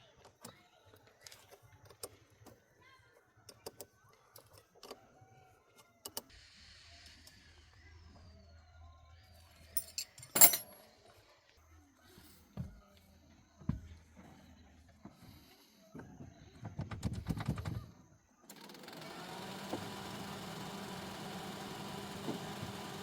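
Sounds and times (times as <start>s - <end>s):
metallic clicks of tools: 9.8s - 10.8s.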